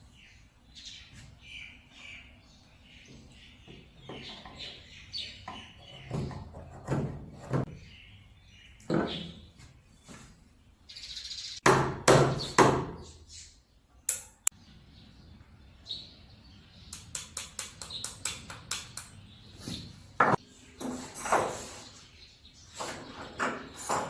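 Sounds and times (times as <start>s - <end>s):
sharp knocks on a saw: 11.6s - 13.0s.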